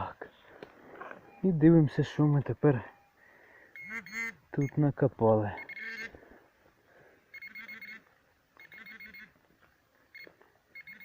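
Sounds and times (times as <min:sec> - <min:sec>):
metal detector beeping: 0:01.2 - 0:01.7, 0:02.8 - 0:04.8, 0:05.6 - 0:06.1, 0:07.3 - 0:09.4, 0:10.1 - 0:11.0.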